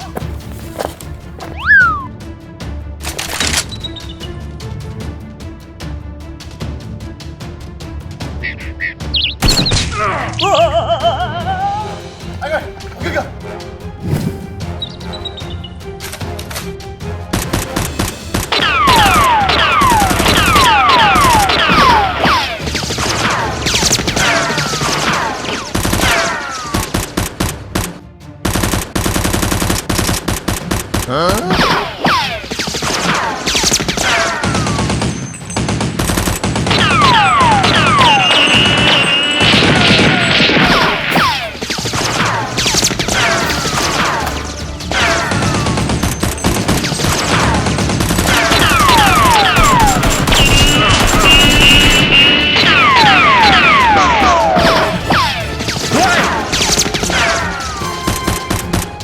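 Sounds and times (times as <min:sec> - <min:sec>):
action background music: 0:00.0 - 0:59.0
falling whistling tones: 0:01.5 - 0:02.1, 0:37.1 - 0:41.0, 0:48.6 - 0:55.3
gunfire volleys: 0:28.6 - 0:58.9
automatic gunfire bursts: 0:45.2 - 0:53.5.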